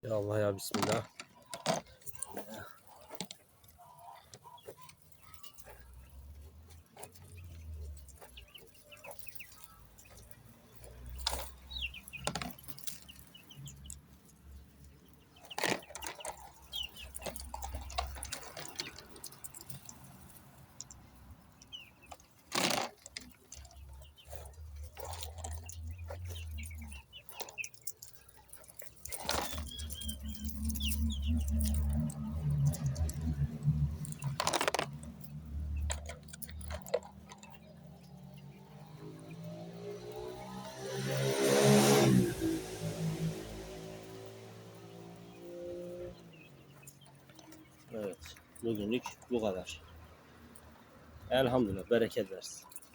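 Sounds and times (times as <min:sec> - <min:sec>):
clicks and knocks of handling: 0:00.7 - 0:05.6, 0:34.0 - 0:37.8
quail chirping: 0:01.4 - 0:22.3, 0:23.2 - 0:34.5, 0:43.5 - 0:52.9.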